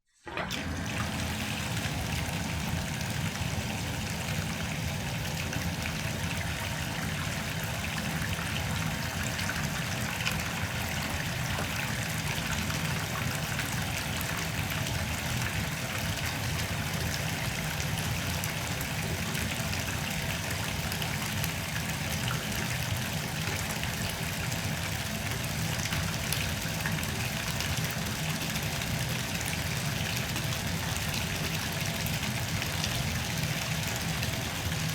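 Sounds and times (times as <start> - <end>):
tap water filling bathtub: 0.2 - 34.9.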